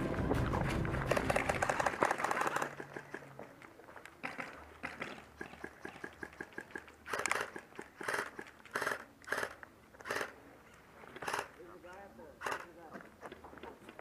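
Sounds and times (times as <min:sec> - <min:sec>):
footsteps crunching on gravel: 0:12.7 - 0:14.0.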